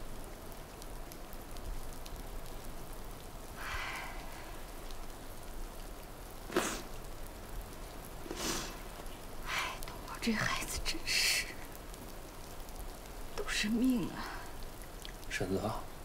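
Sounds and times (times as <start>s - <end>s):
steady rain: 0.0s - 16.0s
soft breath: 3.6s - 4.8s, 8.2s - 9.9s.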